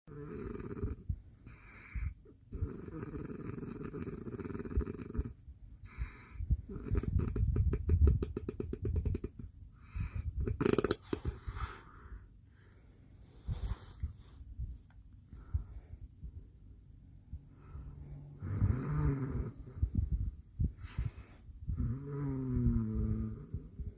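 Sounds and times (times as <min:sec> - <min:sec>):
man snoring: 0:00.1 - 0:01.0, 0:02.5 - 0:05.3, 0:10.4 - 0:11.4, 0:18.4 - 0:19.9, 0:21.8 - 0:23.8.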